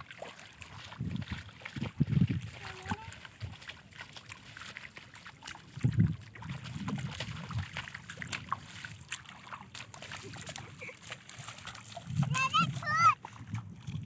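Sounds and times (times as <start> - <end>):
seawater sloshing and splashing: 0.0 - 14.0.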